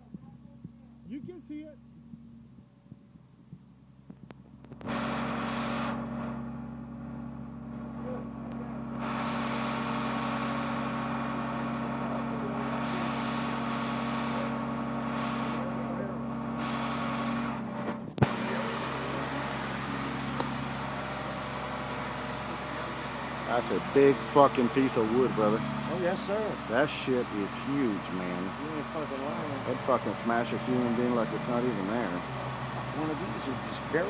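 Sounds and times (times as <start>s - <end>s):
crane truck engine under load: 4.0s - 34.0s
hissing rush: 8.9s - 17.6s, 18.2s - 34.0s.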